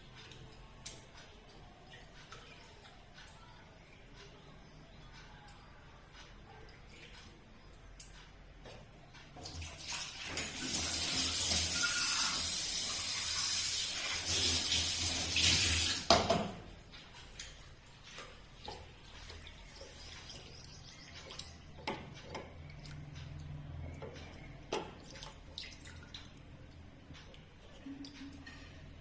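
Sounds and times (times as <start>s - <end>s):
water running and splashing: 9.4s - 16.1s.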